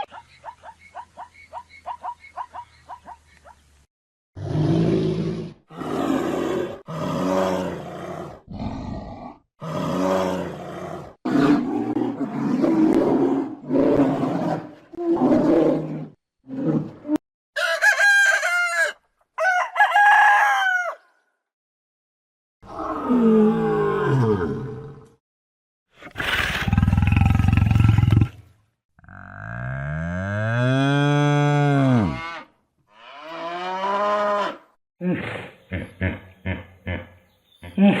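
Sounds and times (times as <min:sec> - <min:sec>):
rooster crowing: 0:17.6 - 0:21.1.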